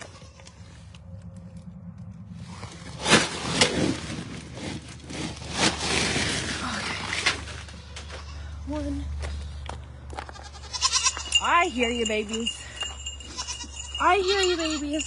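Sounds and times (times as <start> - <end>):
scraping and rustling: 2.3 - 8.3.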